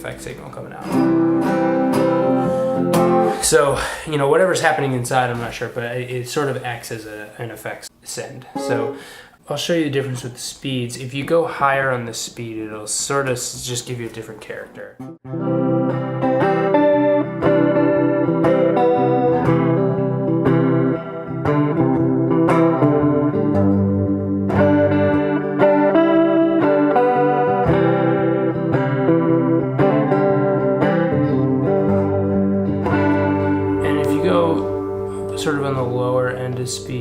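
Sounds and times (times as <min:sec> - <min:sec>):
electric guitar with chorus effect: 0:00.8 - 0:03.4, 0:08.6 - 0:09.2, 0:15.3 - 0:37.0.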